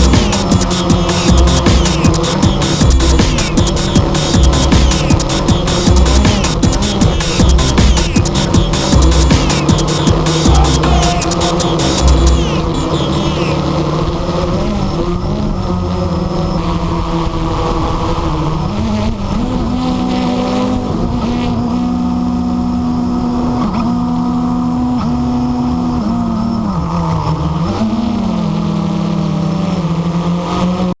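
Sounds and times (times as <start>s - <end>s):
electric motors and propellers humming: 0.0s - 21.4s.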